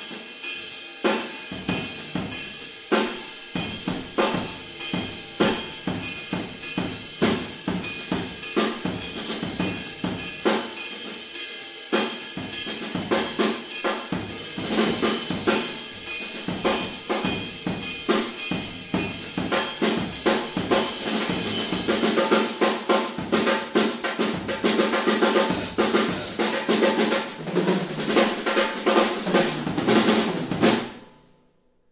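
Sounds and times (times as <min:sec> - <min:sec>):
snare drum rolls: 0:01.1 - 0:10.8, 0:12.0 - 0:31.1
bass drum: 0:01.6 - 0:10.4, 0:14.1 - 0:22.1.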